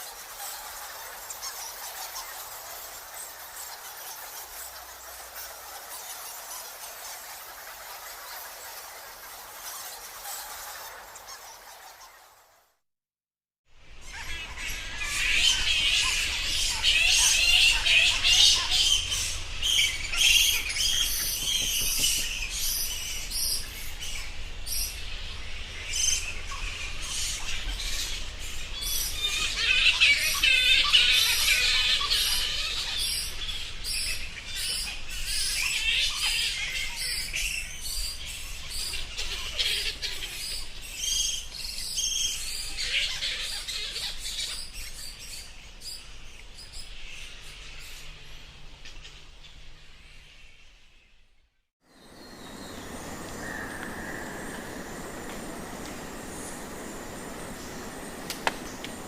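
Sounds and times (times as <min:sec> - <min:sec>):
bats squeaking and chittering: 0:14.0 - 0:25.0, 0:25.9 - 0:45.4, 0:52.0 - 0:59.0.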